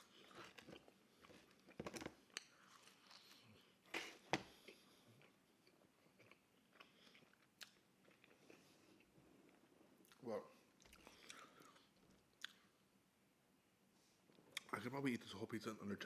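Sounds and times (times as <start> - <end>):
pizza being chewed: 0.0 - 10.2, 10.8 - 12.7.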